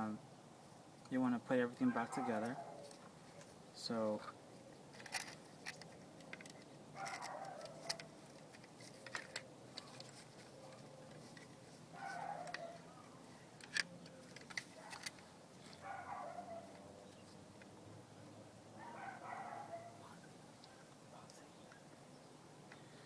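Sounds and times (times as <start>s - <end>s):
animal calls: 1.8s - 3.0s, 18.8s - 20.0s.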